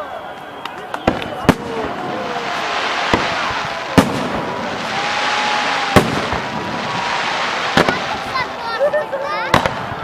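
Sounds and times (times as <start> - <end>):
firework whistle: 0.0 - 8.8
fireworks crackling: 0.0 - 10.0
firework shells bursting: 0.7 - 8.6.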